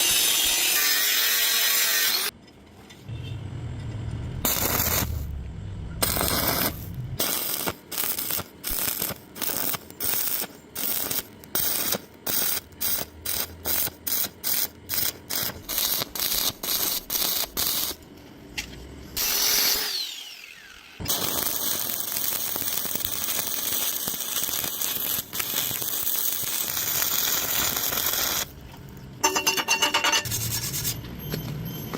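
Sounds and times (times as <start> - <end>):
welding arc crackling and hissing: 0.0 - 2.3, 4.4 - 5.4, 6.0 - 18.0, 19.2 - 29.0.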